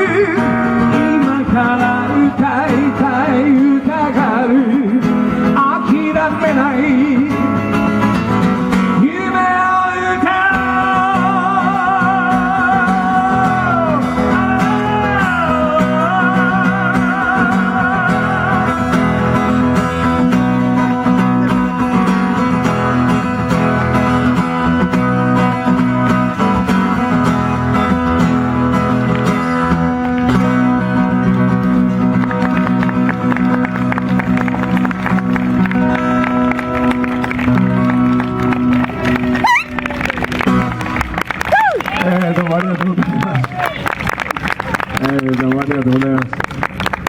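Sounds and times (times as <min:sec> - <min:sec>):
man singing with vibrato: 0:00.0 - 0:07.8, 0:08.8 - 0:22.4
strummed acoustic guitar: 0:00.0 - 0:41.2.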